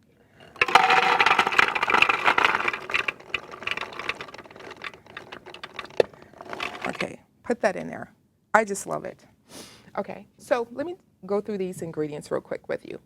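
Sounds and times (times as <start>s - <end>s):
beans rattling into plastic bowl: 0.4s - 7.0s.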